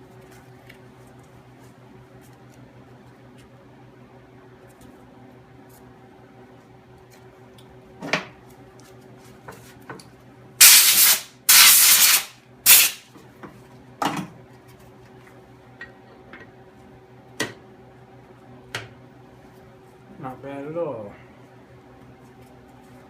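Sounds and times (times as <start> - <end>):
hissing spray blasts: 10.6 - 13.0.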